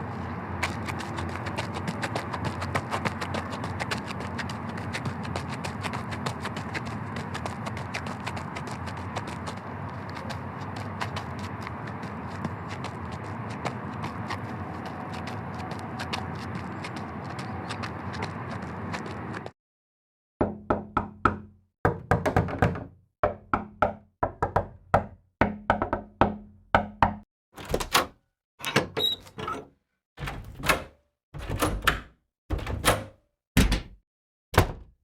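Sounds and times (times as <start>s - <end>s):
repeated knocking: 20.4s - 27.2s.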